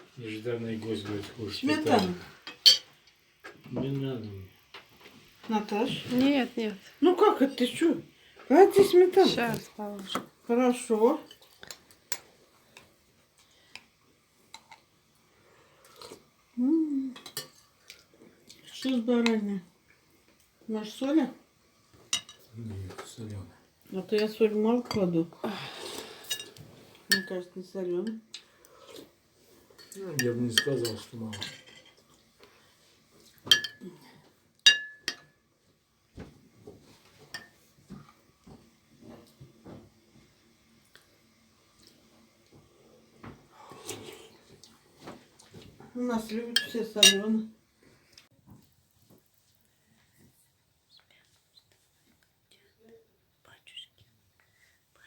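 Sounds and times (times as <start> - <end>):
spoons and dishes clinking: 1.9 - 3.0, 22.2 - 22.5, 26.2 - 27.4, 29.8 - 32.0, 33.5 - 33.8, 34.7 - 35.4, 46.6 - 47.3.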